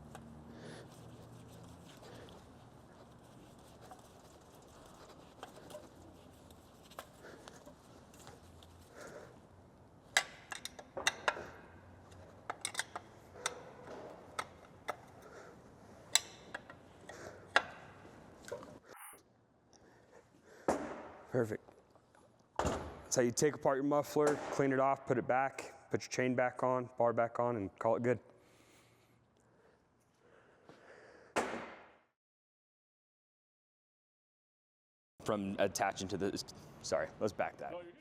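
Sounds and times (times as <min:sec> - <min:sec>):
metal parts and tools clicking: 0:10.1 - 0:15.2, 0:16.0 - 0:17.8.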